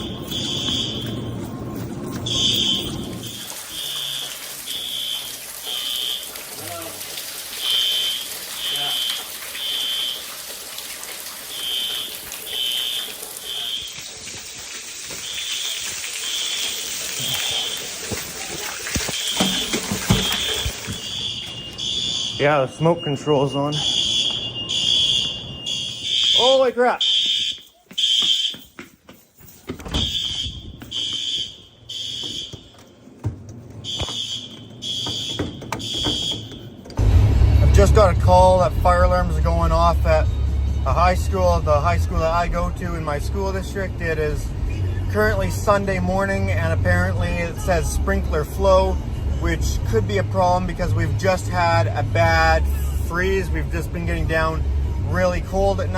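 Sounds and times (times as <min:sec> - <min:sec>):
fire alarm horn beeps: 0:00.0 - 0:01.4, 0:02.2 - 0:06.4, 0:07.6 - 0:10.3, 0:11.5 - 0:14.1, 0:15.2 - 0:18.0, 0:19.0 - 0:28.8, 0:29.9 - 0:32.9, 0:33.8 - 0:36.9
water spraying hiss: 0:02.4 - 0:21.2
knocks: 0:33.2 - 0:37.0
low rumble: 0:37.0 - 0:45.5.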